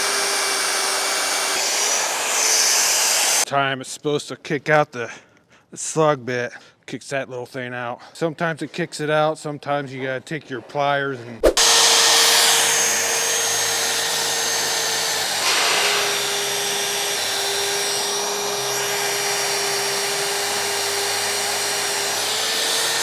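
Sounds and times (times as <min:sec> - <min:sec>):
magnetic drill motor whine: 0:00.0 - 0:03.4, 0:11.6 - 0:23.0
cutter rasping into steel: 0:00.0 - 0:03.5, 0:11.4 - 0:23.0.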